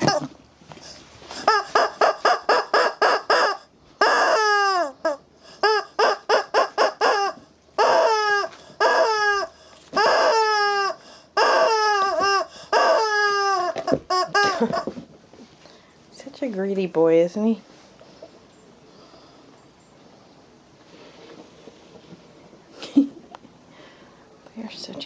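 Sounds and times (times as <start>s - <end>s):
rubber chicken toy squawking: 1.4s - 14.9s.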